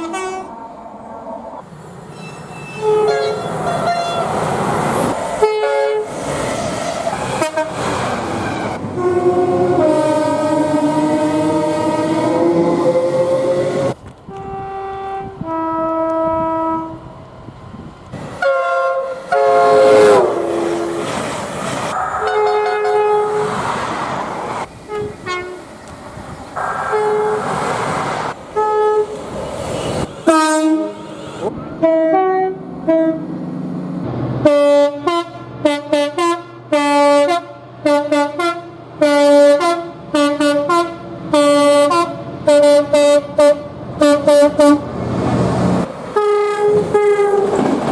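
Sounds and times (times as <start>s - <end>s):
train horn blasts: 0.0s - 0.5s, 2.2s - 4.3s, 5.4s - 6.1s, 7.4s - 7.8s, 8.9s - 17.0s, 18.4s - 21.1s, 22.2s - 23.5s, 24.9s - 25.7s, 26.9s - 27.5s, 28.6s - 29.2s, 29.8s - 33.3s, 34.4s - 44.9s, 46.2s - 47.6s.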